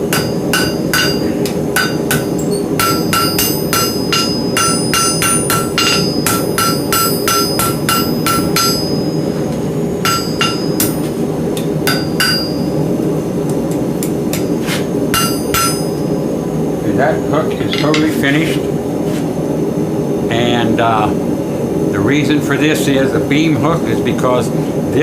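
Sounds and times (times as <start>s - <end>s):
hammer striking steel on anvil: 0.0s - 9.4s, 10.0s - 12.8s, 14.0s - 16.1s, 17.6s - 18.2s.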